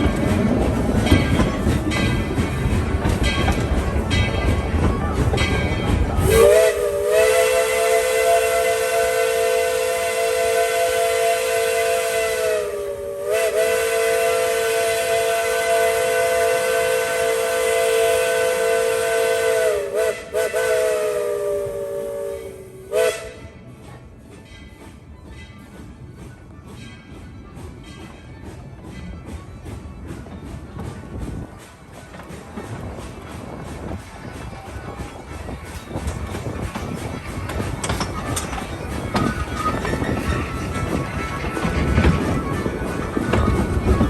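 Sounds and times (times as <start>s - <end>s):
steam locomotive whistle: 6.2s - 23.6s.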